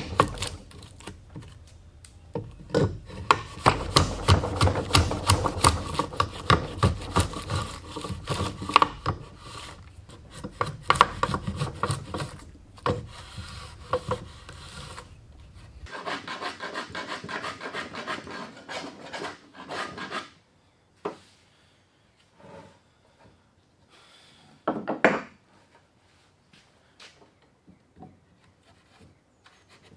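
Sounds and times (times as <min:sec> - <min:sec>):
hand tool rasping on wood: 0:03.0 - 0:15.0, 0:15.9 - 0:20.3.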